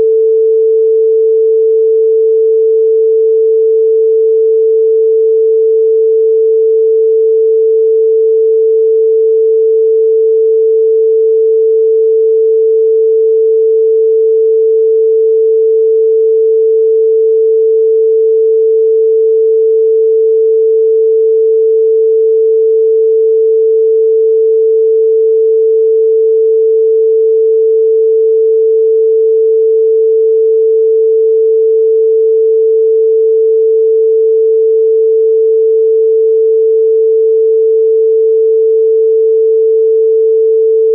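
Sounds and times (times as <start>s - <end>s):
steady electronic sine tone: 0.0s - 40.9s.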